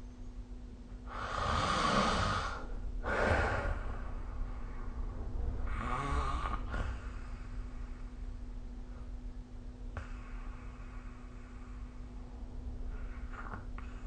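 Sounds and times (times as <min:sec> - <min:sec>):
person snoring and breathing heavily: 0:01.1 - 0:04.7, 0:05.6 - 0:08.1.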